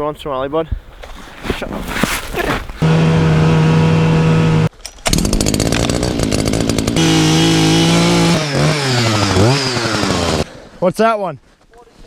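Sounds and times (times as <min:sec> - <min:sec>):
ice auger engine running: 0:02.8 - 0:10.5.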